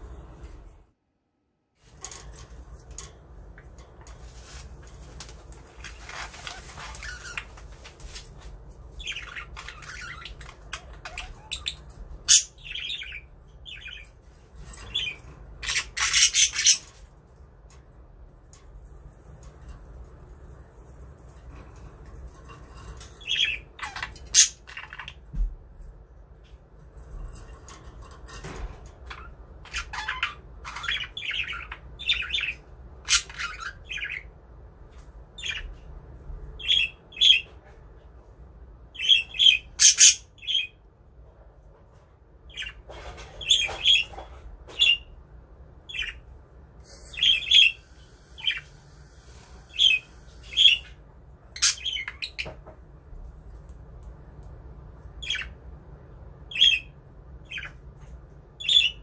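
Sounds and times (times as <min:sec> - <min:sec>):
budgerigars chirping and squawking: 0:05.7 - 0:07.6, 0:09.0 - 0:17.0, 0:23.0 - 0:25.3, 0:29.0 - 0:34.3, 0:35.4 - 0:35.8, 0:36.6 - 0:37.7, 0:39.0 - 0:40.8, 0:42.5 - 0:45.2, 0:45.9 - 0:46.3, 0:46.9 - 0:52.7, 0:55.2 - 0:55.6, 0:56.5 - 0:57.8, 0:58.6 - 0:59.0.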